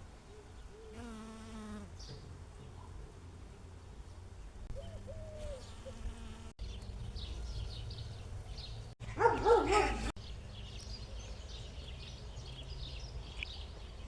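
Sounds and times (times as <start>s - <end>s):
small birds chirping: 4.0s - 14.0s
dog barking: 9.1s - 10.1s.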